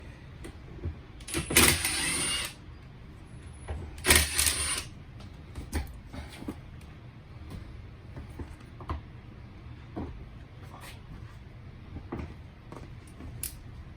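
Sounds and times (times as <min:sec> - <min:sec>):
cordless drill whining: 0:01.2 - 0:02.6, 0:04.0 - 0:04.9.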